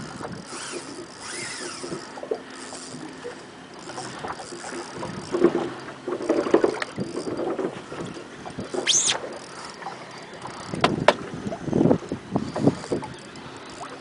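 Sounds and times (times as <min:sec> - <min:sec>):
water slapping hull: 0:00.0 - 0:14.0
wind buffeting microphone: 0:10.6 - 0:13.5.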